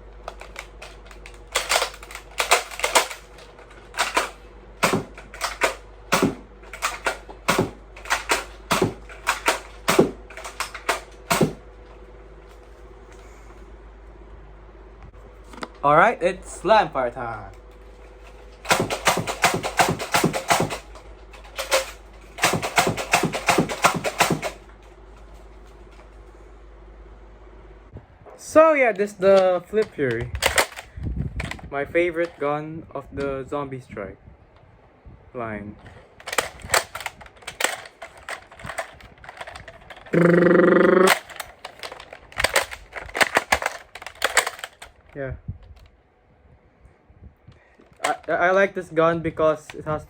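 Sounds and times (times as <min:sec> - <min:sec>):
loud steady hum-like tone: 0:00.0 - 0:29.9, 0:34.0 - 0:48.3
toy blaster slide clacks: 0:36.2 - 0:45.0.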